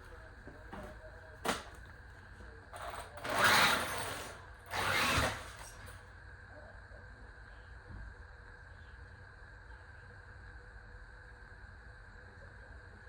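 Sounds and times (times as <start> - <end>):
electric motor whirring: 3.2 - 5.7.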